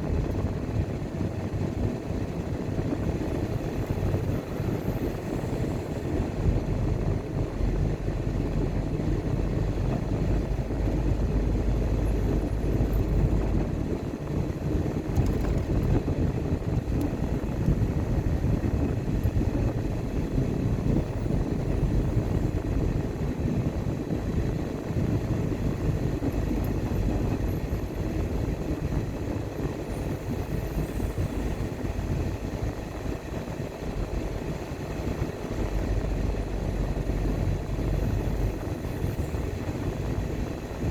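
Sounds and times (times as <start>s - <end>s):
car tyre and engine rumble: 0.0s - 40.9s.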